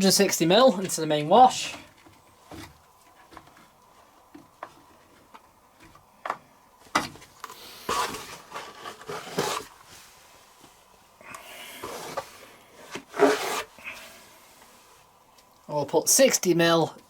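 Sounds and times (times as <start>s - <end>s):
plastic bottle scraping and rustling: 6.9s - 10.4s, 11.7s - 14.2s.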